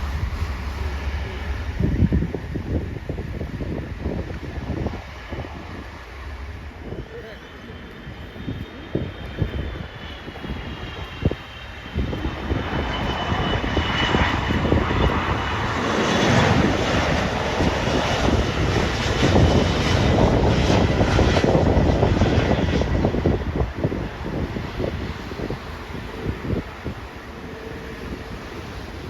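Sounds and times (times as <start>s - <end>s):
jet engines passing overhead: 0.0s - 29.0s.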